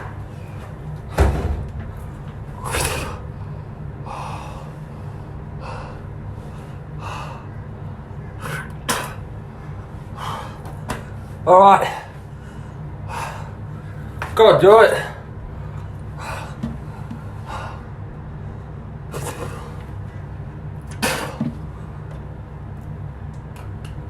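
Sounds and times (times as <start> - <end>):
steady low hum: 0.0 - 24.0
man gasping and breathing hard: 2.6 - 7.6, 8.4 - 13.6, 15.5 - 18.0.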